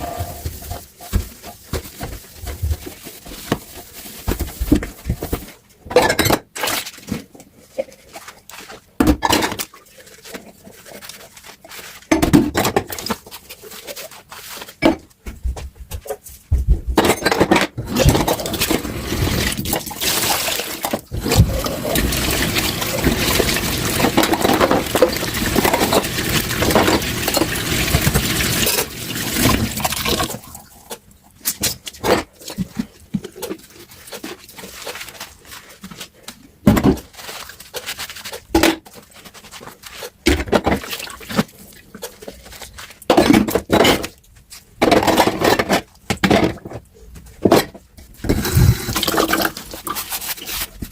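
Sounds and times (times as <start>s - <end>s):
tap water running into sink: 21.2s - 30.4s.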